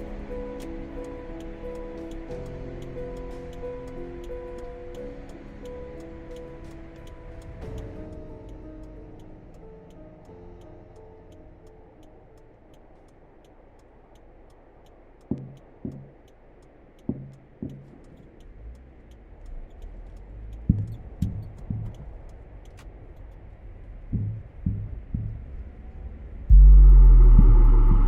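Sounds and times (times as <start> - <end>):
clock ticking: 0.0 - 23.4, 24.1 - 25.6
heartbeat thuds: 15.2 - 18.4, 20.2 - 22.7, 23.9 - 25.9, 26.5 - 28.0
low rumble: 17.0 - 28.0.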